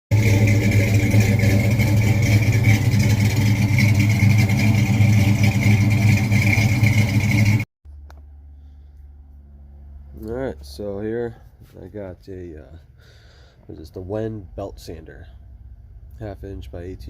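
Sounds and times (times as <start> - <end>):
engine running loudly: 0.1 - 7.6.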